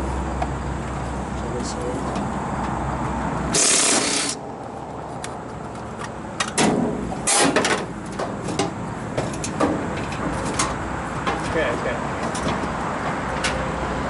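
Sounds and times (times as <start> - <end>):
loud hiss: 3.5 - 4.4
clattering work noise: 6.0 - 13.6.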